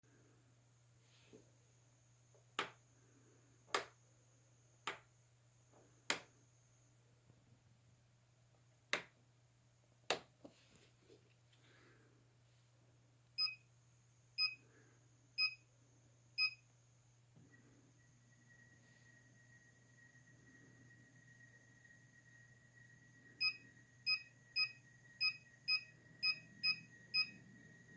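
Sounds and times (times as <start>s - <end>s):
faint high whine: 11.7s - 27.9s.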